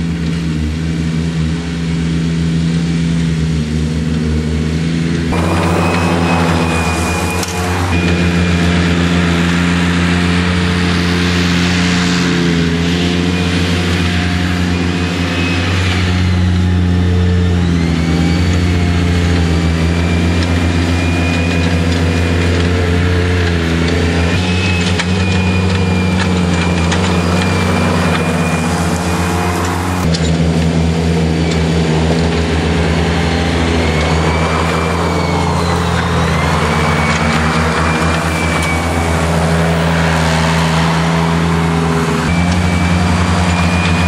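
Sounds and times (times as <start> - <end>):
loader engine running: 0.0 - 44.0
high wavering whine: 2.9 - 44.0
rushing noise: 5.3 - 21.9.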